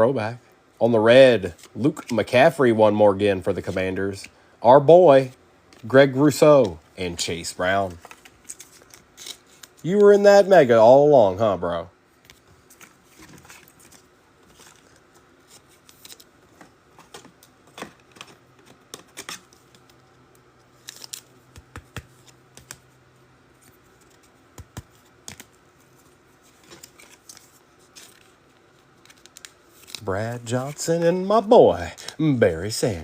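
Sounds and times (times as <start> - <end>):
cards and wrappers rustling: 5.2 - 10.7, 12.2 - 33.0.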